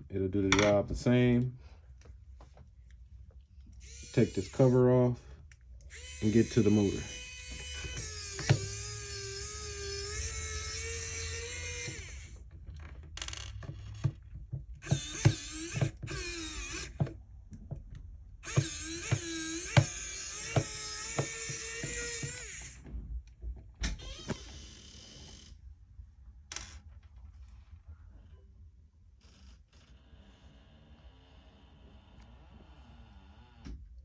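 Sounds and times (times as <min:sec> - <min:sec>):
electric screwdriver whining: 0:03.7 - 0:04.9, 0:05.8 - 0:12.4, 0:14.8 - 0:17.2, 0:18.4 - 0:22.9.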